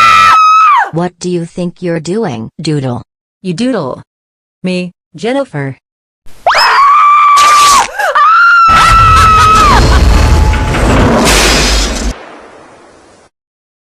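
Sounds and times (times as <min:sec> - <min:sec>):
high-pitched scream: 0:06.4 - 0:10.9
loud crashing rumble: 0:08.7 - 0:13.3.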